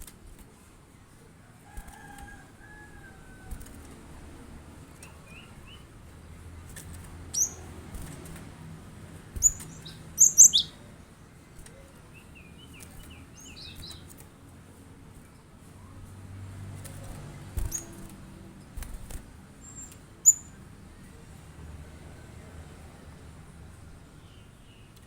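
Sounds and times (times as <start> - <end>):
bird chirping: 5.0 - 5.9, 7.2 - 7.8, 9.4 - 10.9, 11.7 - 14.2, 17.0 - 18.0, 19.6 - 20.6
bird twittering: 7.3 - 7.7, 9.4 - 10.8, 19.6 - 20.6.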